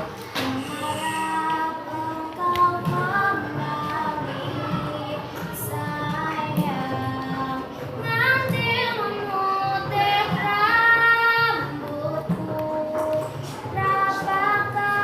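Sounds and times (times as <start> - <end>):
girl singing with vibrato: 0.0 - 15.0.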